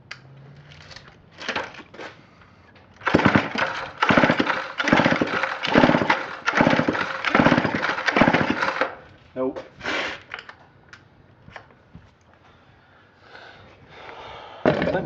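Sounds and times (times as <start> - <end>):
chainsaw starter cord pulls: 0.7 - 2.2, 3.0 - 9.1
engine turning over chugging: 2.9 - 9.0.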